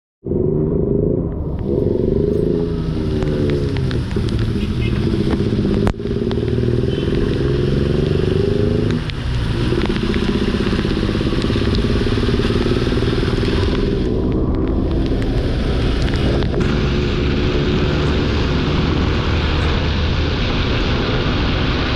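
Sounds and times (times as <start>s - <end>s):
vehicle engine accelerating: 0.2s - 21.9s
steady rush of noise: 0.3s - 21.9s.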